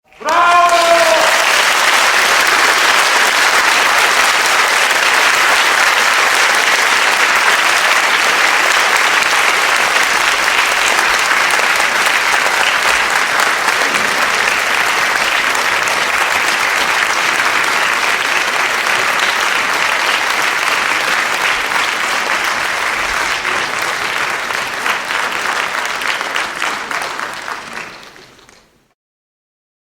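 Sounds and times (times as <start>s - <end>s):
audience applauding: 0.1s - 28.9s.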